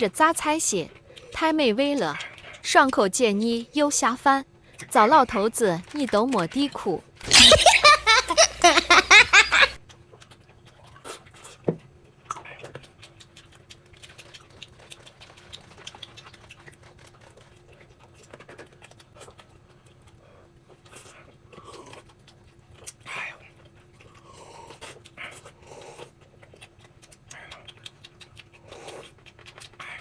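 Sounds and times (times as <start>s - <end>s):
faint steady hum: 0.0s - 30.0s
person chewing: 0.9s - 1.4s, 7.2s - 30.0s.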